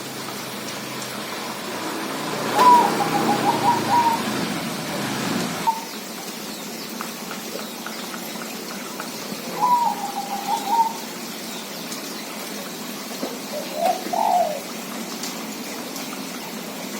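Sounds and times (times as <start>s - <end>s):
dove cooing: 2.4s - 4.8s, 5.4s - 5.9s, 9.5s - 11.1s, 13.5s - 14.8s.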